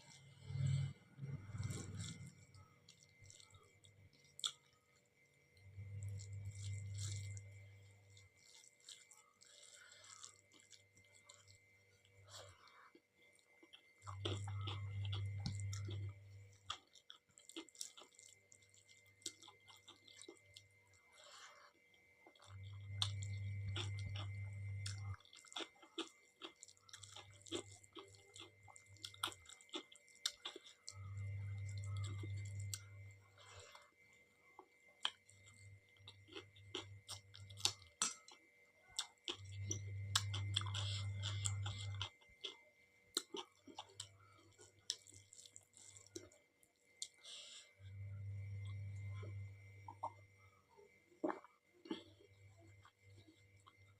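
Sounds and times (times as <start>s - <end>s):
low hum: 0.0s - 4.2s, 47.7s - 51.2s
chewing soft food: 0.0s - 53.9s.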